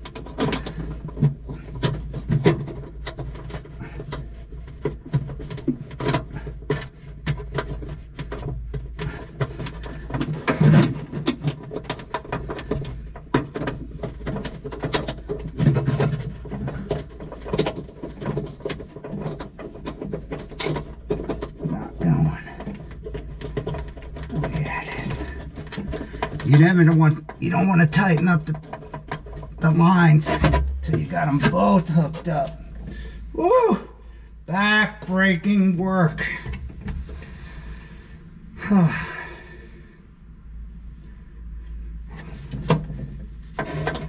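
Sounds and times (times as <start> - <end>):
low grunts of effort: 38.6 - 39.6.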